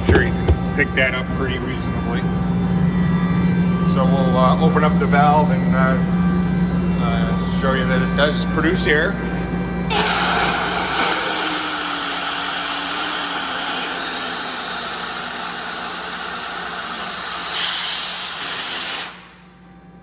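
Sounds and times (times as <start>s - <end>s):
air compressor humming: 0.0s - 19.6s
compressed air hissing from valve: 11.0s - 19.4s.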